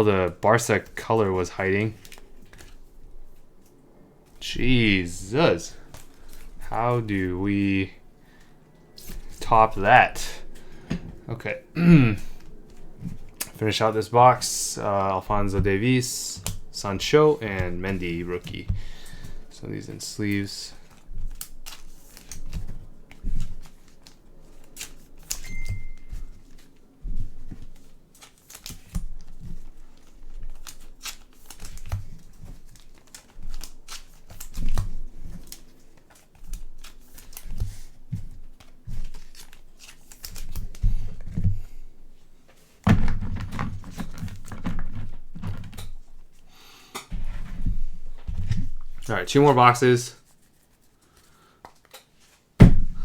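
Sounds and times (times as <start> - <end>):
cards rustling and sliding: 0.2 - 11.2, 14.4 - 49.4
packaging crinkling: 17.8 - 41.4.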